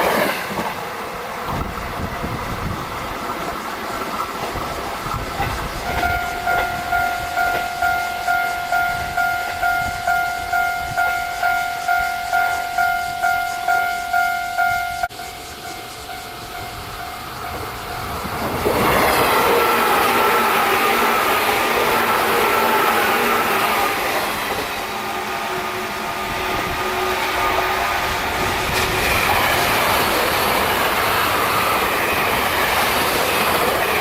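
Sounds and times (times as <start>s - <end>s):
train rumbling: 0.0s - 34.0s
level crossing alarm ringing: 5.9s - 18.3s.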